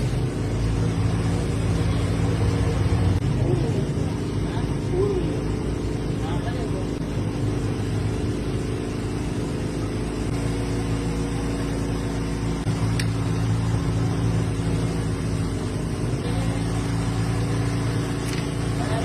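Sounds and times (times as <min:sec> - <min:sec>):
engine running steadily: 0:00.0 - 0:19.0.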